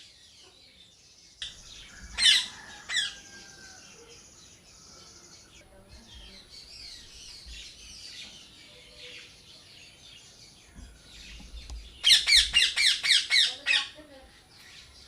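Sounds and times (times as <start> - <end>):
birds chirping: 0.0 - 15.0
parrot calling: 2.2 - 3.2, 12.0 - 14.0.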